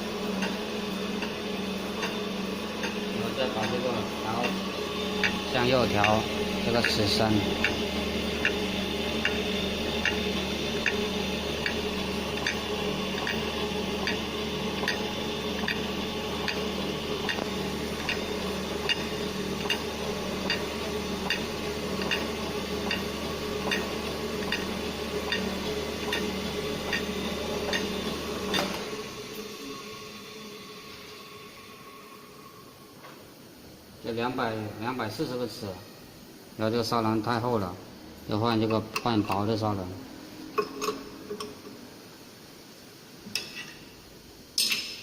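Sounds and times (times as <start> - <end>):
blade grinder motor humming: 0.0 - 30.0
grinder sharp clicks: 10.8 - 11.0, 13.2 - 13.4, 17.2 - 18.2.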